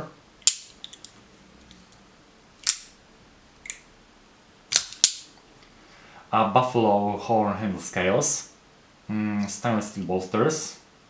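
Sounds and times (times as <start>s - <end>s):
knife lock metallic clicks: 2.6s - 2.9s.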